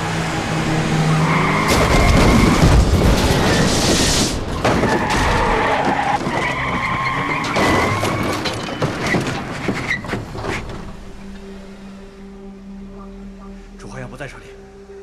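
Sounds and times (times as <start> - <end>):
vehicle noise: 0.0 - 15.0
car tyres squealing: 0.8 - 10.9.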